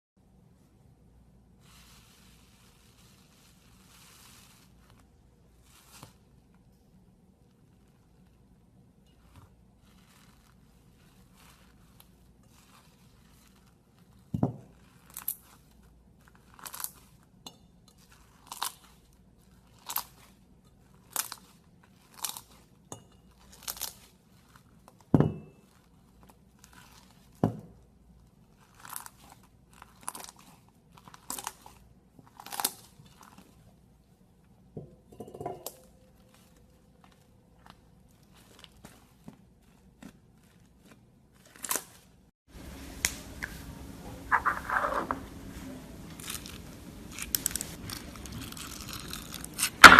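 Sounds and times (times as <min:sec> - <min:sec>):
slime crunchy crackle: 0:46.2 - 0:49.9.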